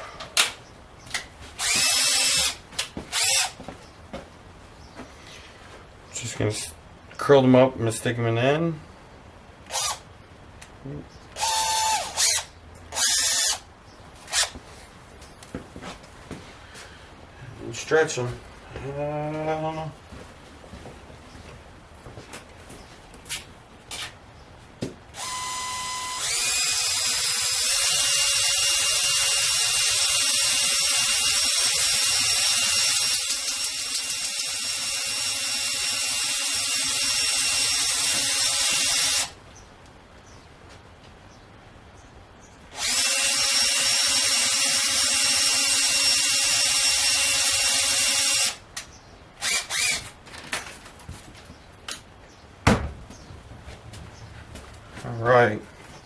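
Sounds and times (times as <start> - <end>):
power drill spinning: 1.6 - 3.6, 9.7 - 10.0, 11.4 - 13.6, 14.3 - 14.6, 25.2 - 39.4, 42.7 - 48.6, 49.4 - 50.2.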